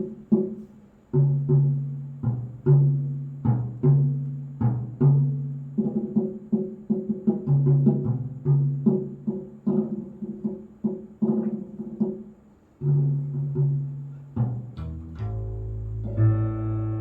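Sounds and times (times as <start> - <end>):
low plucked instrumental notes: 12.8 - 17.0.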